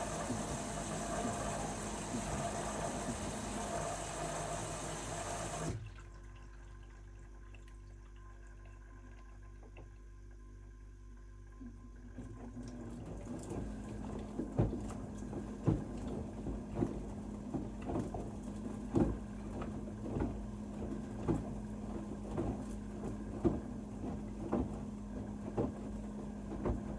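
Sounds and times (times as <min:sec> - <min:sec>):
washing machine motor humming: 0:00.0 - 0:06.1, 0:11.5 - 0:26.9
wet laundry tumbling and thumping: 0:12.4 - 0:26.9.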